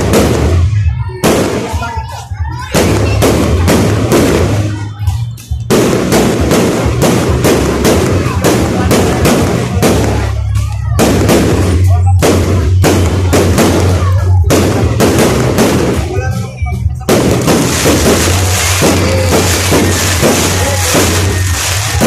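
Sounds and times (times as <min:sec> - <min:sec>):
fireworks bangs and cracks: 0:00.0 - 0:22.0.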